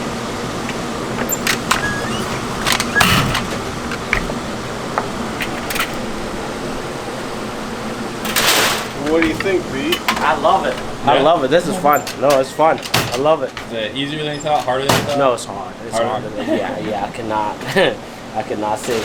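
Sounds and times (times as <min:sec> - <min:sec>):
mechanical hum: 0:00.0 - 0:19.0
light clicks and knocks: 0:00.6 - 0:06.1.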